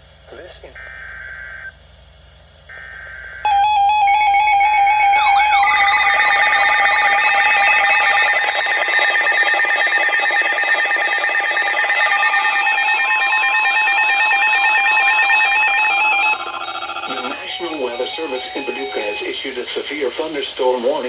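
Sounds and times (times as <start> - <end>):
beeping warbling alarm tones: 3.5 - 19.9
steady alarm tone: 3.5 - 20.1.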